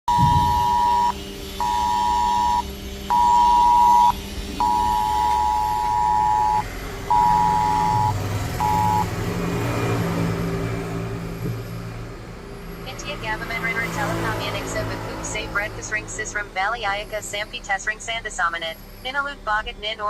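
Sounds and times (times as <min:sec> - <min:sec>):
phone emergency alert tone: 0:00.1 - 0:09.1
low steady hum: 0:00.1 - 0:09.9, 0:10.7 - 0:20.0.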